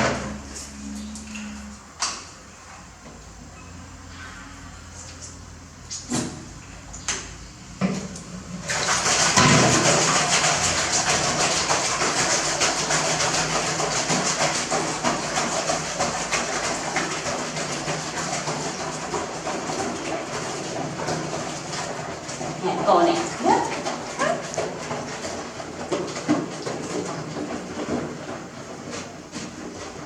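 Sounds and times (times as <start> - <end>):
running water pouring: 8.6 - 29.8.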